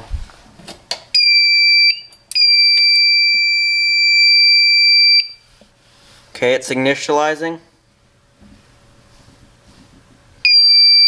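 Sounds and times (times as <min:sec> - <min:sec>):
high-pitched alarm panel buzzer: 0:10.5 - 0:11.0.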